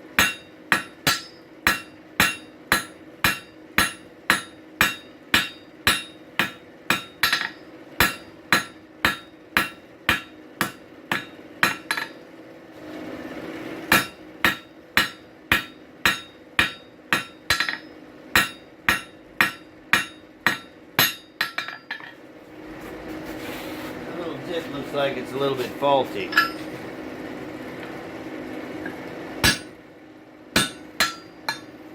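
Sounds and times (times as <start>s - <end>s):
hammer striking steel on anvil: 0.1s - 12.2s, 13.9s - 22.2s, 26.2s - 26.8s, 29.4s - 29.8s, 30.5s - 31.9s.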